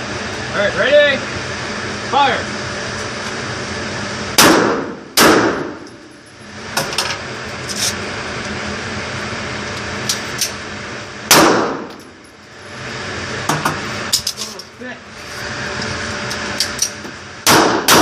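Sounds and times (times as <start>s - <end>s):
gunshots with long echo: 4.4s - 5.8s, 11.3s - 11.9s, 17.4s - 18.0s.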